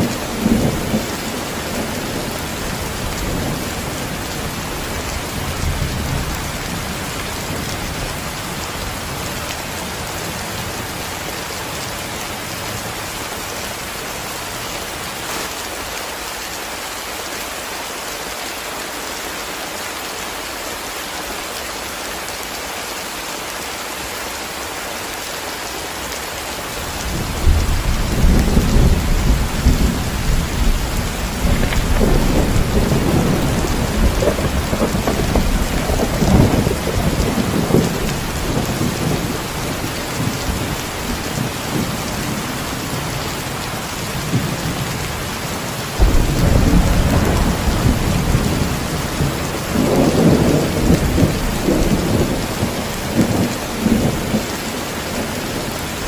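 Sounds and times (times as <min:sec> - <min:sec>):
heavy rain falling: 0:00.0 - 0:56.0
thunder rolling: 0:27.2 - 0:42.0, 0:46.0 - 0:54.4.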